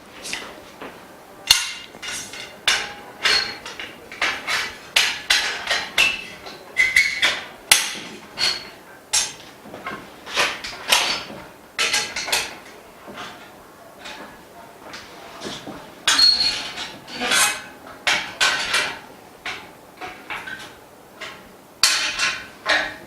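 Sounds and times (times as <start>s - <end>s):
frame bars knocked into place: 15.0s - 23.0s.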